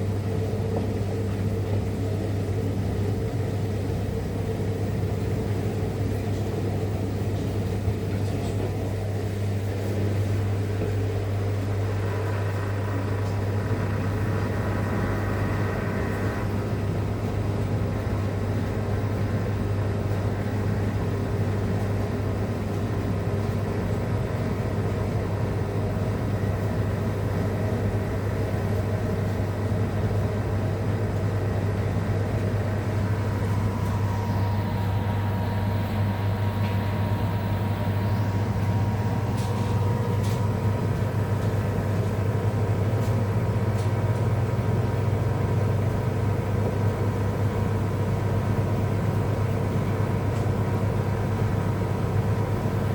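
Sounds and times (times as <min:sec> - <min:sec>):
washing machine humming: 0:00.0 - 0:52.9
faint high whine: 0:11.8 - 0:16.9, 0:32.9 - 0:40.8.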